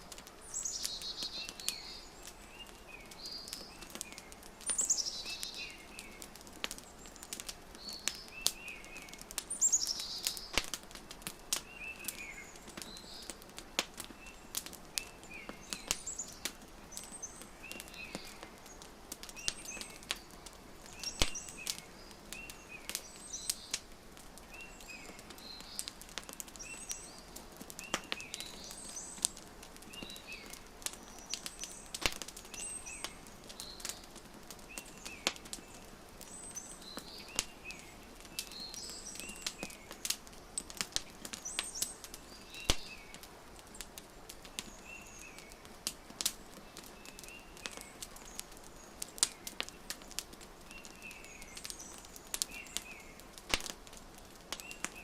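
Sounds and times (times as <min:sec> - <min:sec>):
small birds chirping: 0:00.0 - 0:55.0
wood fire crackling and popping: 0:00.0 - 0:55.0
bright falling bird call: 0:00.5 - 0:06.2.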